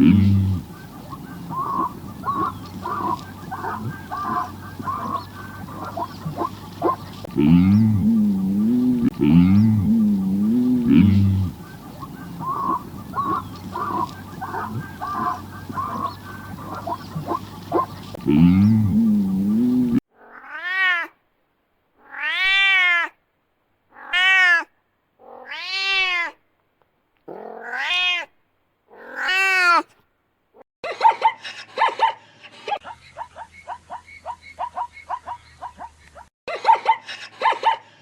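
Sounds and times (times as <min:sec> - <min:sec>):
cow mooing: 0:00.0 - 0:20.0
farmyard noise: 0:00.0 - 0:20.0.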